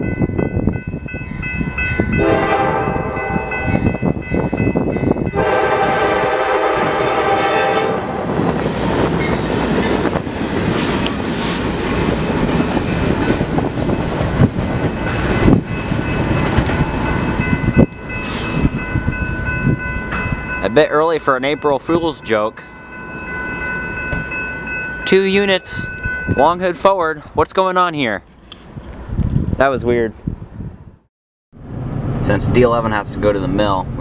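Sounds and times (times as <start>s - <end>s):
locomotive horn blasts: 2.1s - 3.8s, 5.3s - 8.4s
locomotives rumbling past: 5.3s - 26.8s.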